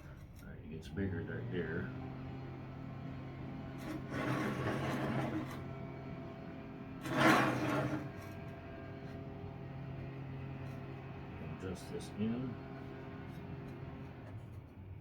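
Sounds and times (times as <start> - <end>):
scraping on table saw: 1.8 - 14.7.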